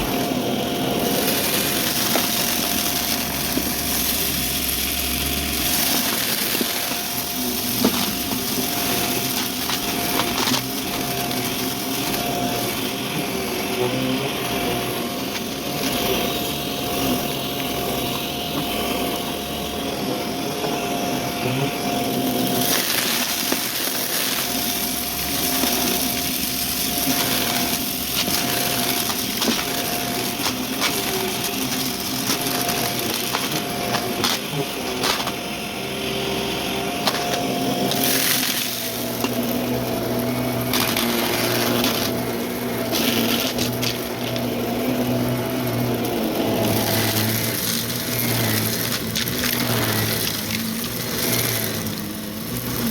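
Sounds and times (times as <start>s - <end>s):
debris crunching and crackling: 0.0s - 13.3s, 22.3s - 35.6s, 36.8s - 52.9s
vacuum cleaner motor hum: 0.0s - 52.9s.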